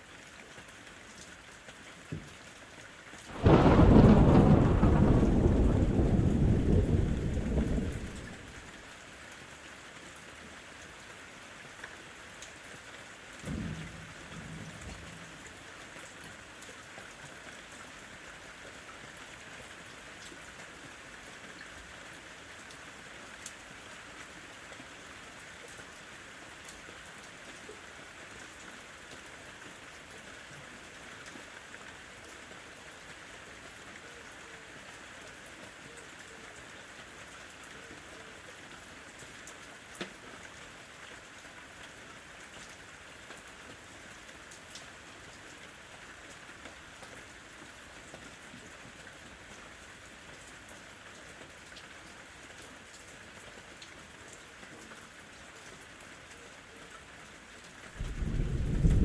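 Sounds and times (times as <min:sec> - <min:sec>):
rain on a window: 0:00.0 - 0:59.0
thunder rumbling: 0:03.3 - 0:08.6, 0:57.9 - 0:59.0.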